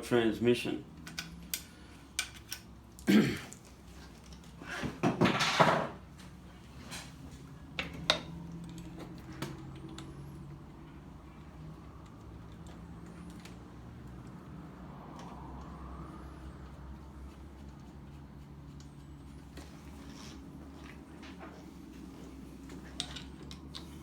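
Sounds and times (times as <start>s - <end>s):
clicks and knocks of tools: 1.0s - 4.6s, 22.6s - 24.0s.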